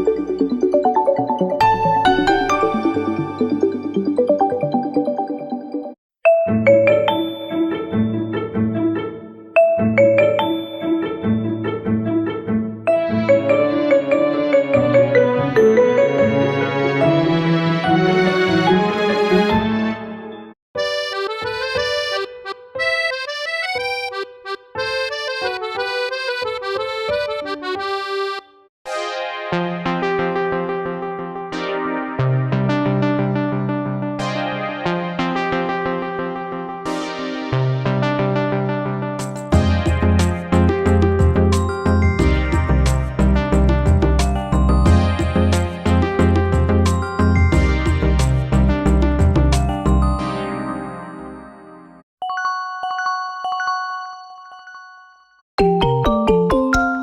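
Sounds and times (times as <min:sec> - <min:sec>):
electronic ringtone melody: 0:00.0 - 0:07.8, 0:09.7 - 0:10.9, 0:49.6 - 0:51.4, 0:52.2 - 0:57.0
instrumental ringtone melody: 0:00.0 - 0:08.1, 0:09.6 - 0:11.1, 0:12.9 - 0:16.7, 0:20.8 - 0:28.5, 0:41.2 - 0:51.4, 0:52.2 - 0:57.0
bell-like notes: 0:01.6 - 0:04.9, 0:06.4 - 0:08.0, 0:09.8 - 0:11.1, 0:49.6 - 0:57.0.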